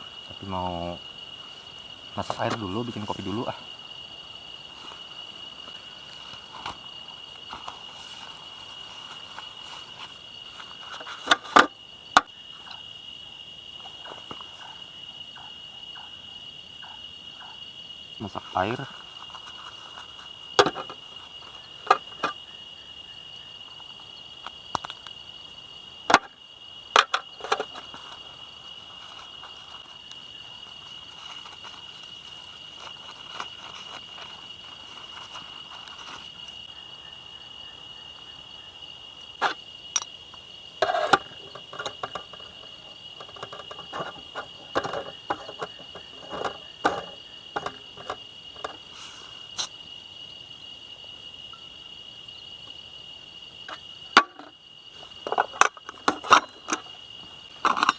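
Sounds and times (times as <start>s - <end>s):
insects chirring: 0.0s - 57.9s
camp gear knocking and clattering: 2.2s - 3.7s, 4.6s - 12.8s, 13.8s - 14.8s, 18.2s - 22.4s, 26.1s - 36.6s, 39.3s - 40.2s, 40.8s - 48.9s, 53.6s - 57.9s.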